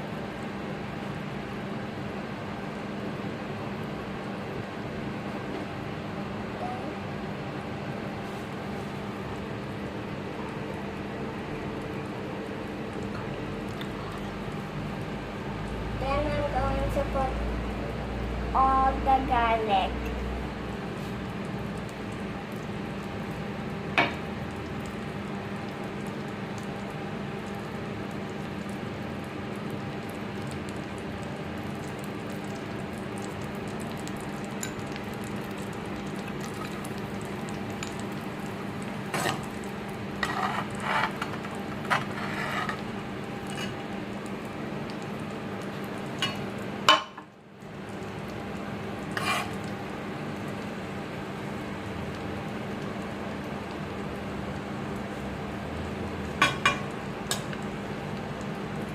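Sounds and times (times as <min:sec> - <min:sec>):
garlic sizzling in butter: 0:21.0 - 0:51.7.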